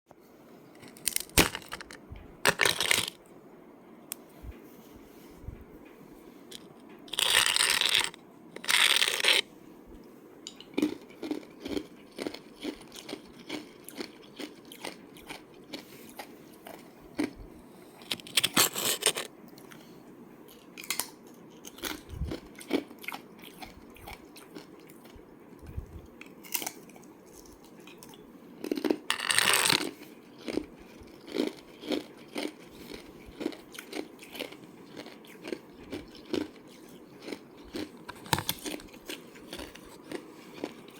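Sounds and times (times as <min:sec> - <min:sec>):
chewing ice crunches: 0:06.5 - 0:09.4, 0:10.7 - 0:17.4, 0:26.2 - 0:40.9.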